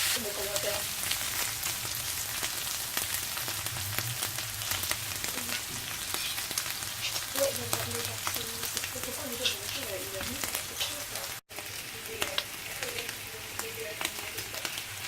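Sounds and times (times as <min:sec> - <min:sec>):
meat sizzling in hot oil: 0:00.0 - 0:15.0.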